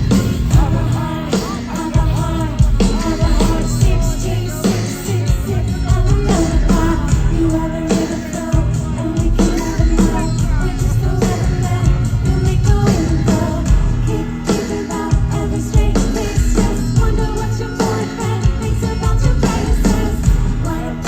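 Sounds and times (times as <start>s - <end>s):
drums: 0.0s - 21.0s
guitar: 0.0s - 21.0s
woman singing: 0.0s - 21.0s.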